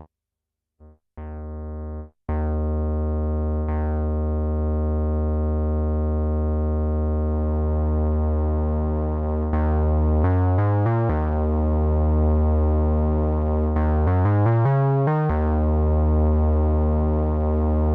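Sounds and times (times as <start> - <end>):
synthesizer bass tone: 8.1 - 17.9.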